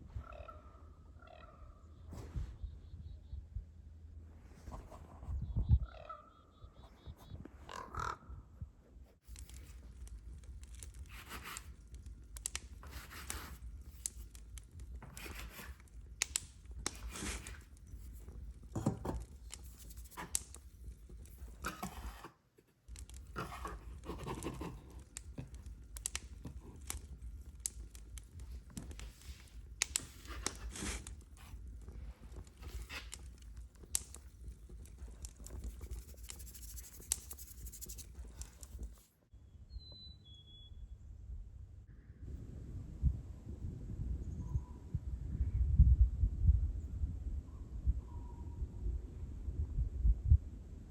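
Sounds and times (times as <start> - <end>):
scraping rustling and tearing handling: 9.3 - 39.1.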